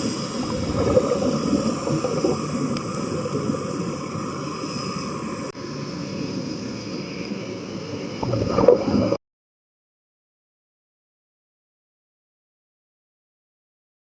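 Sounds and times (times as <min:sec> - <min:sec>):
muffled churning water: 0:00.0 - 0:09.2.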